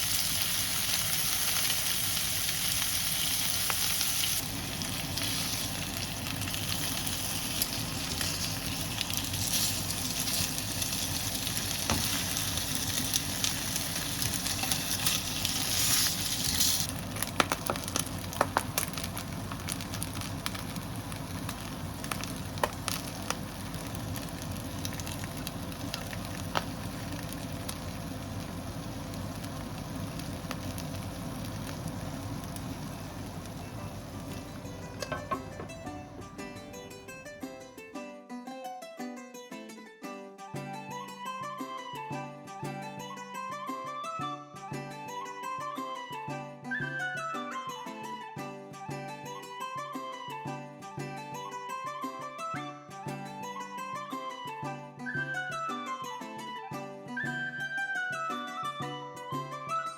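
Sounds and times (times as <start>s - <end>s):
food frying in oil: 0.0s - 37.2s
oil popping and crackling: 0.0s - 37.4s.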